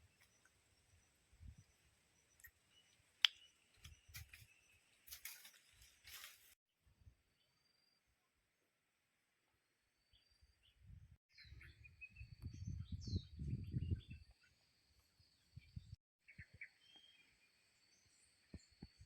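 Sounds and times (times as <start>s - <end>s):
bird chirps: 10.1s - 14.6s, 15.2s - 19.0s.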